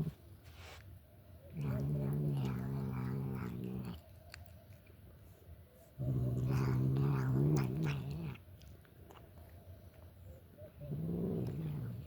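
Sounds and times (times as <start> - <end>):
cat droning: 1.5 - 4.1, 6.0 - 8.4
chewing clicks: 1.6 - 5.0, 7.6 - 10.2.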